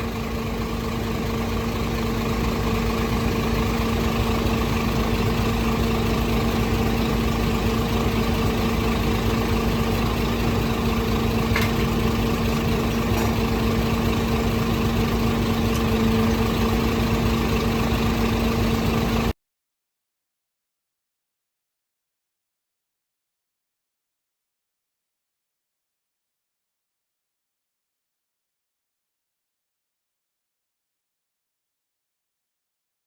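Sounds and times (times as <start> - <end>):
truck diesel engine idling: 0.0 - 19.4.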